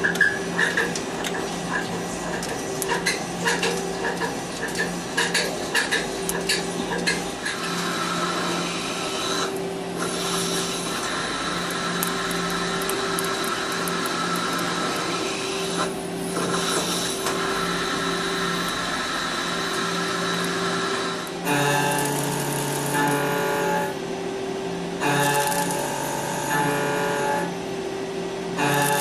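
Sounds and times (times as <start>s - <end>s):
machine humming and whining: 0.0s - 29.0s
machine hiss: 7.4s - 23.8s.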